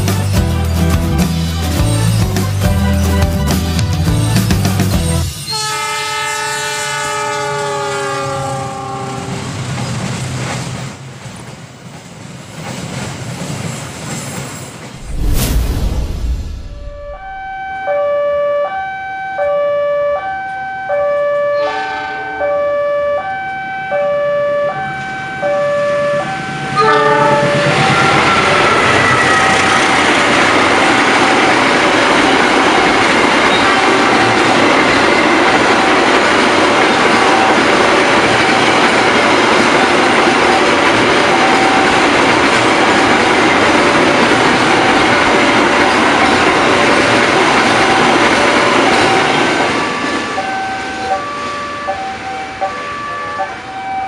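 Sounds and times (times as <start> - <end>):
train rumbling past: 3.0 - 17.6, 24.9 - 54.0
two-tone crossing warning siren: 5.6 - 9.4, 17.0 - 30.8, 45.8 - 54.0.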